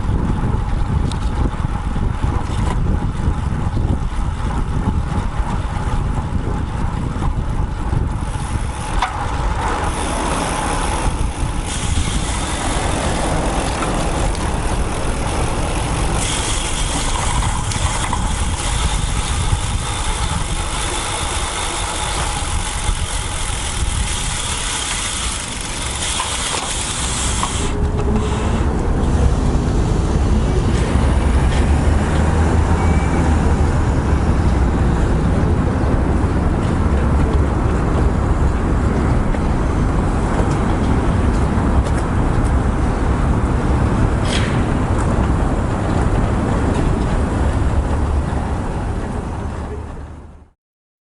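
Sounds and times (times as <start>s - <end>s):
wind buffeting microphone: 0.0s - 50.4s
road traffic rumble: 0.0s - 50.5s.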